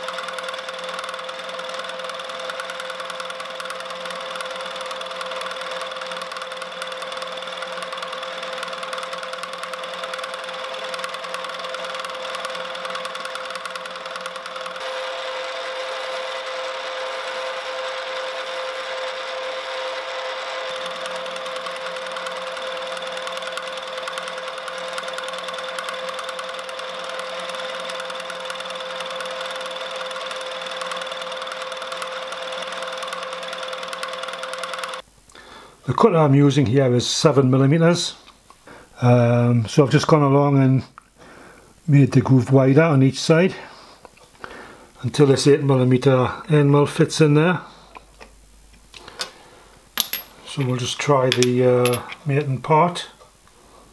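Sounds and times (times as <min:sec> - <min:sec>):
milling machine whine: 0:00.0 - 0:35.0.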